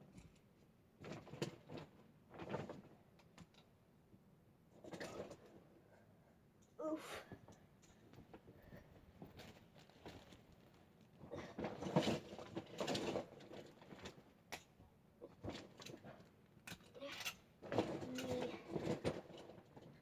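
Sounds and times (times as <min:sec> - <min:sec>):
faint voice: 0:06.8 - 0:07.3, 0:18.0 - 0:18.8
plastic toys rustling and clattering: 0:09.2 - 0:10.8, 0:11.6 - 0:14.3, 0:16.7 - 0:20.0.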